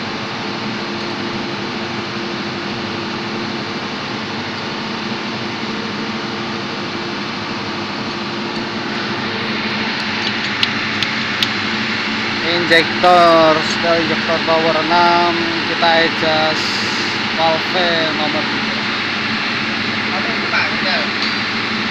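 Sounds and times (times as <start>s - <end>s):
engine-room machinery drone: 0.0s - 21.9s.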